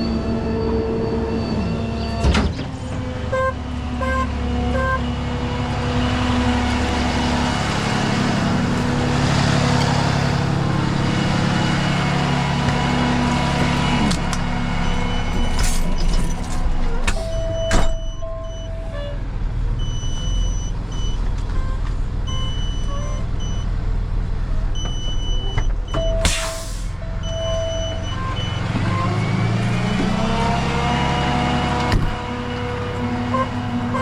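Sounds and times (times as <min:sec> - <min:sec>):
truck engine running: 0:00.0 - 0:34.0
short hiss: 0:26.3 - 0:27.0.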